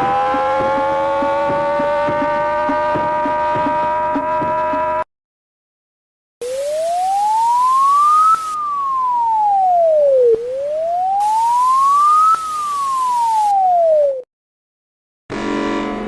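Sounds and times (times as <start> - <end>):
wailing siren: 0.0 - 5.0, 6.4 - 14.2.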